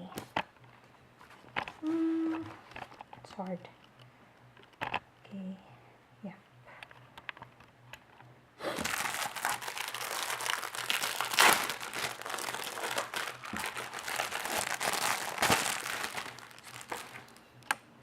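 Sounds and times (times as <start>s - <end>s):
plastic wrapping crinkling and ripping: 8.6s - 17.8s.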